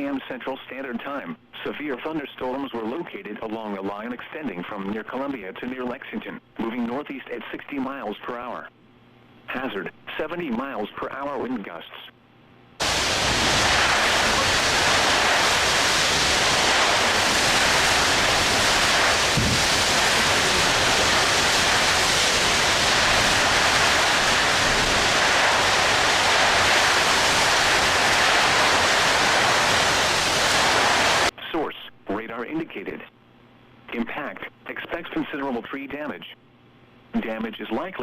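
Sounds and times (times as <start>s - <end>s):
loud rushing wind noise: 12.8s - 31.3s.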